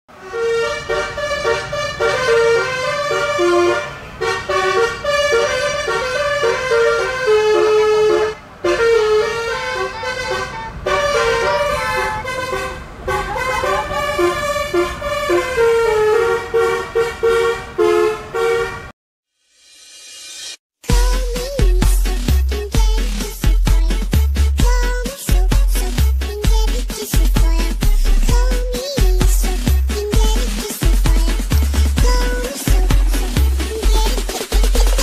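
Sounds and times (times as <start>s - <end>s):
bus horn playing melody: 0.1s - 18.9s, 31.1s - 34.2s.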